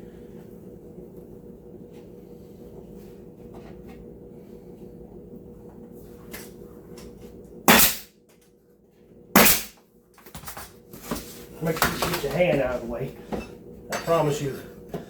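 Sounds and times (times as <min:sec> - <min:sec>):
nail gun firing into wood: 0:07.7 - 0:08.1, 0:09.4 - 0:09.8.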